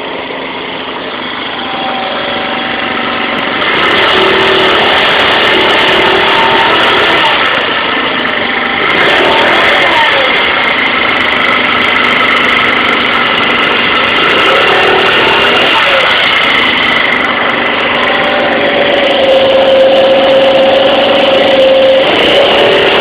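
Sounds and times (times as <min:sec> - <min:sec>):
low steady whine: 0:00.0 - 0:06.8
high-pitched squeal: 0:00.0 - 0:23.0
scooter engine running: 0:00.0 - 0:23.0.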